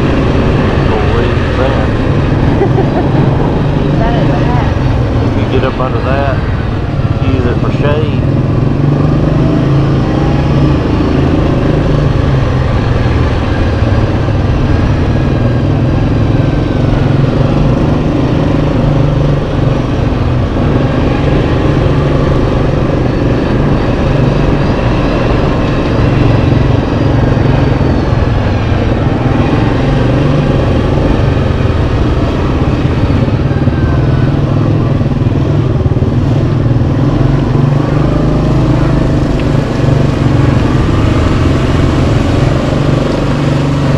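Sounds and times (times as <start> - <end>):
atv engine running: 0.0 - 43.9.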